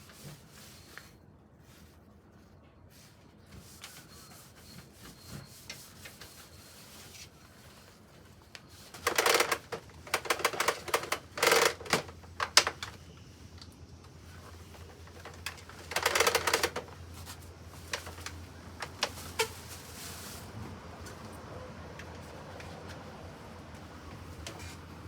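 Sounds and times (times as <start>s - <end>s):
rapid clattering and rustling: 4.9s - 13.0s, 14.3s - 20.5s.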